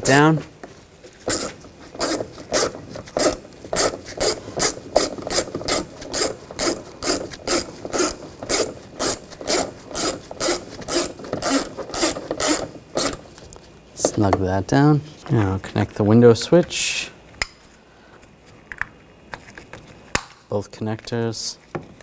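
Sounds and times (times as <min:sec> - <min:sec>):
hand ratchet clicking: 0:01.3 - 0:13.2.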